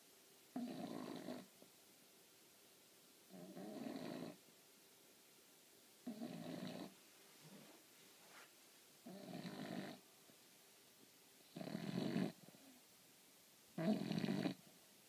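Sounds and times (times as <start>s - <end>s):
dog snoring: 0.5s - 1.5s, 3.3s - 4.4s, 6.0s - 7.0s, 9.0s - 10.0s, 11.5s - 12.7s, 13.8s - 14.7s.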